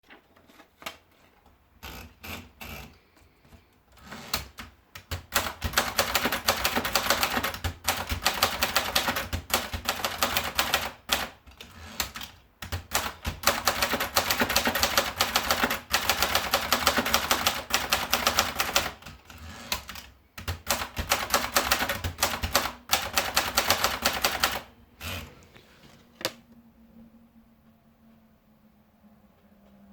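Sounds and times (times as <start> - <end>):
manual typewriter typing: 1.8 - 3.0, 4.0 - 25.3.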